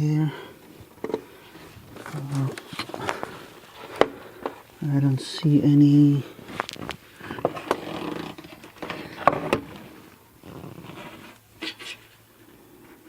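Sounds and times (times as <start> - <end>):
plastic scraping and rattling: 0.6 - 4.7, 6.3 - 12.2.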